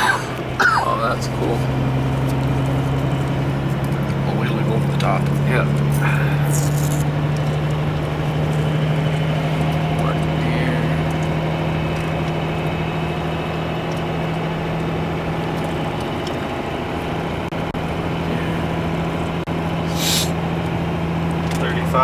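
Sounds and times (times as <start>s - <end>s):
road and tyre noise: 0.0s - 22.0s
truck engine hum: 0.0s - 22.0s
short hiss: 19.9s - 20.4s.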